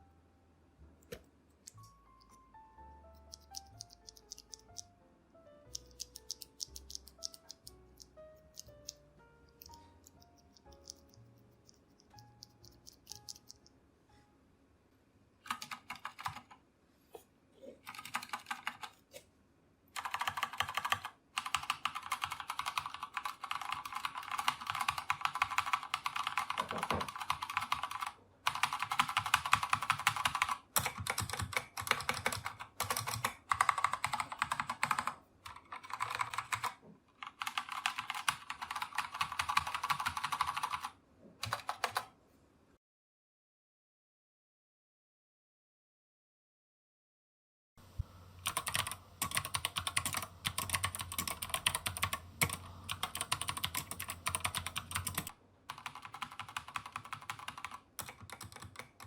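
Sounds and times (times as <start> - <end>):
fast mechanical keyboard typing: 3.1 - 4.8, 5.7 - 9.0, 9.6 - 13.6, 15.5 - 16.6, 17.9 - 19.0, 20.0 - 42.1, 48.4 - 59.0.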